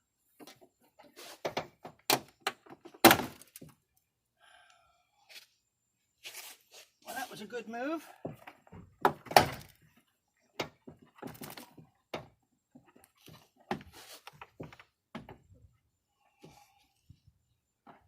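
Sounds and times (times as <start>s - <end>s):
plastic trim panel knocks and clunks: 8.3s - 9.7s.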